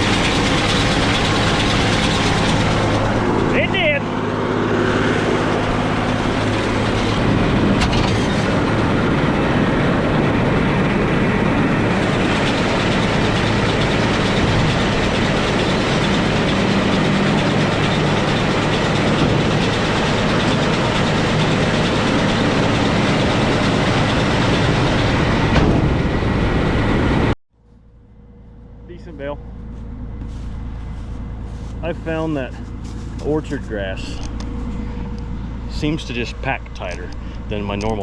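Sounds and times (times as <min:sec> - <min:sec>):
baler mechanical clatter: 0:00.0 - 0:26.2, 0:27.8 - 0:38.0
tractor diesel engine running: 0:00.0 - 0:38.0.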